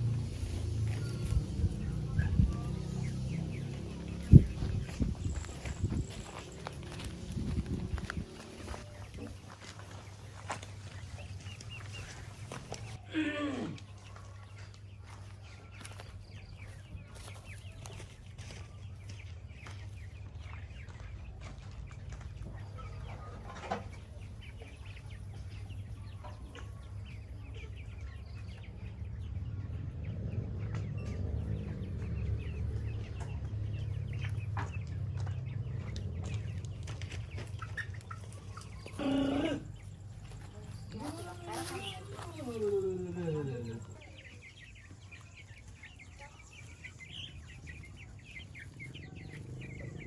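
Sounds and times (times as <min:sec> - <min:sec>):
low rumble: 0:00.0 - 0:08.8, 0:28.0 - 0:38.8
chickens clucking: 0:00.0 - 0:50.0.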